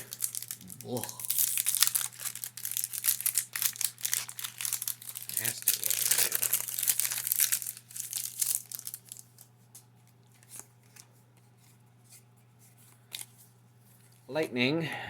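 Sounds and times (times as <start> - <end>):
foil wrapper crinkling and tearing: 0.0 - 9.5, 10.2 - 11.1.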